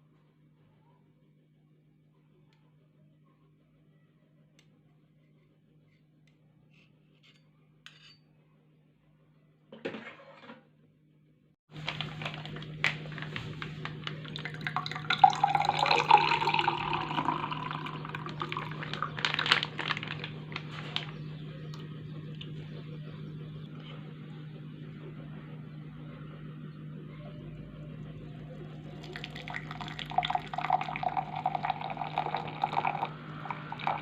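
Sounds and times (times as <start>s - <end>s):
liquid pouring into container: 11.8s - 21.1s, 28.6s - 34.0s
low hum: 11.8s - 34.0s.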